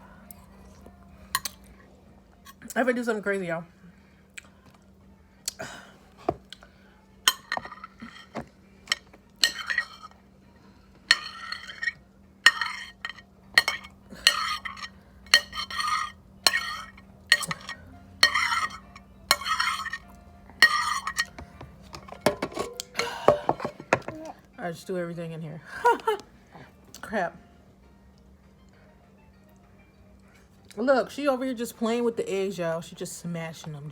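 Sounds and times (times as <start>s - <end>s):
utensil scraping food in bowl: 11.1s - 20.0s, 20.6s - 22.7s.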